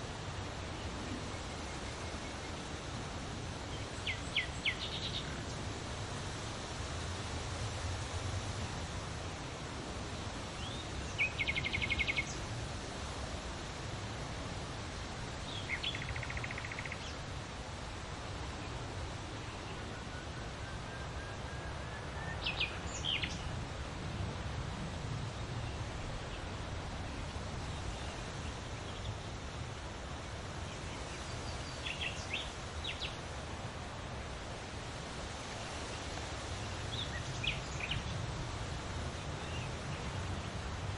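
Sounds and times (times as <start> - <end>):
wind rustling large leaves: 0.0 - 40.9
small birds trilling and chirping: 0.7 - 7.5, 10.0 - 13.9, 14.9 - 17.3, 21.7 - 23.6, 27.5 - 33.4, 35.3 - 40.8.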